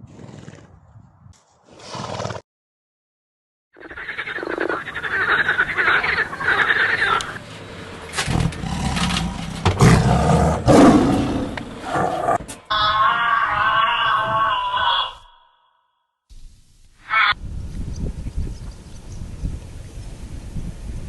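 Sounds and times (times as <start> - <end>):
deep animal calls: 3.8 - 7.4, 8.3 - 15.8
pulsing croaking calls: 3.8 - 7.4, 12.7 - 15.8, 17.0 - 17.4.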